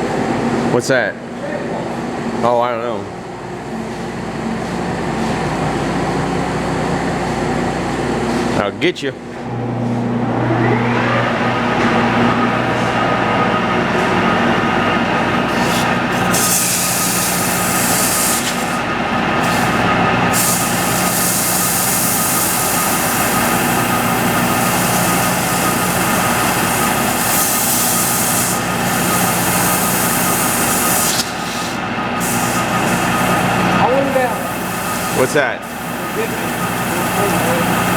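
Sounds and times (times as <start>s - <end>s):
steady mechanical drone: 0.0s - 37.9s.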